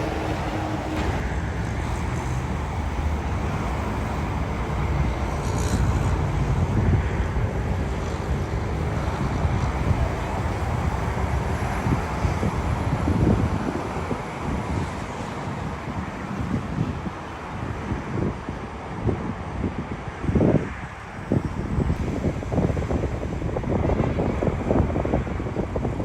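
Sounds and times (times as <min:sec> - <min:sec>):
jet engines rumbling: 0:00.0 - 0:06.2, 0:07.4 - 0:15.5
wind buffeting microphone: 0:00.0 - 0:26.0.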